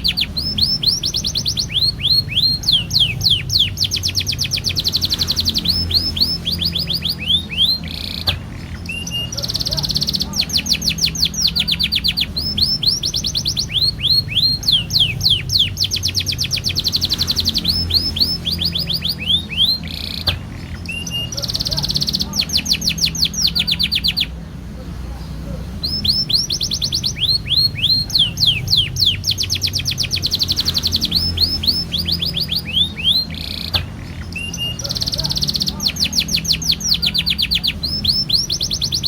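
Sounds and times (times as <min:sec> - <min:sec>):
canary singing fast rolls: 0:00.0 - 0:24.4, 0:25.3 - 0:39.0.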